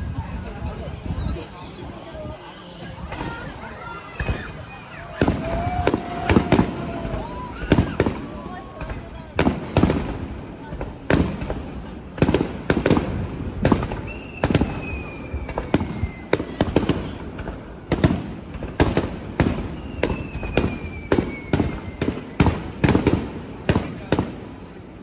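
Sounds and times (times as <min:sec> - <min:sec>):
fireworks bangs: 0:00.0 - 0:25.0
descending firework whistle: 0:00.1 - 0:10.0, 0:13.6 - 0:18.0, 0:19.4 - 0:23.2.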